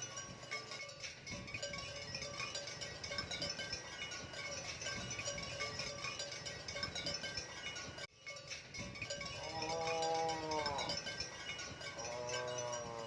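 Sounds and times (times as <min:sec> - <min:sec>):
cow mooing: 0:09.4 - 0:11.1, 0:12.0 - 0:13.0.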